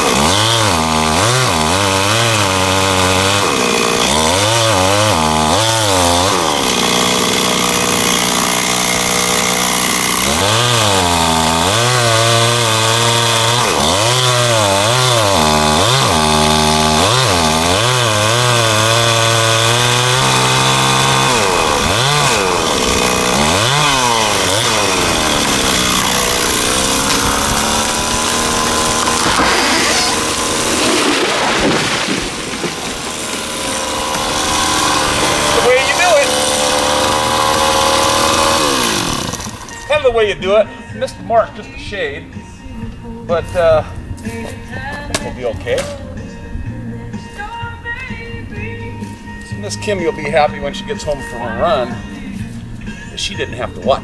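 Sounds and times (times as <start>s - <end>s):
chainsaw cutting wood: 0.0s - 40.1s, 44.9s - 46.0s.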